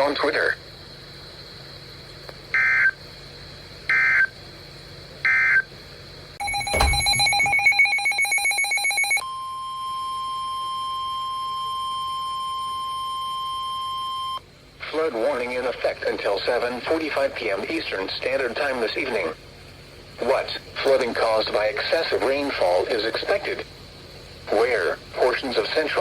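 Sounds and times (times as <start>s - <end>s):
steady warning alarm tone: 2.6s - 3.0s, 3.9s - 4.3s, 5.2s - 5.6s, 6.4s - 14.4s
pulsing electronic alert signal: 6.4s - 9.2s
data tone bursts: 6.4s - 14.4s.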